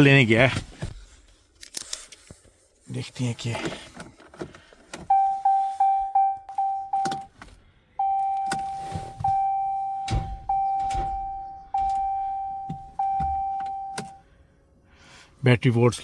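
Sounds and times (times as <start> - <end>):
dashboard warning chime: 5.0 - 7.3, 8.0 - 14.3.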